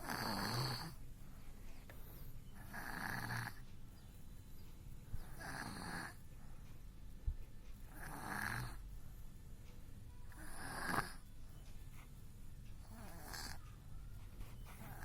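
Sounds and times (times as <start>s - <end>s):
baby snoring: 0.0s - 1.0s, 2.7s - 3.6s, 5.3s - 6.2s, 7.9s - 8.8s, 10.4s - 11.2s, 12.8s - 13.6s.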